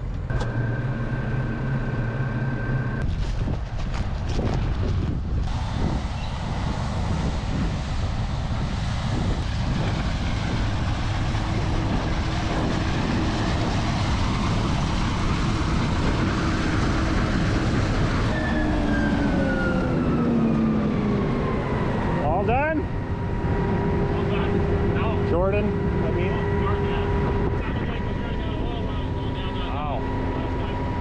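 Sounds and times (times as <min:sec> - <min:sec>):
farm machinery engine rumble: 0:00.0 - 0:31.0
rushing mechanical noise: 0:00.0 - 0:31.0.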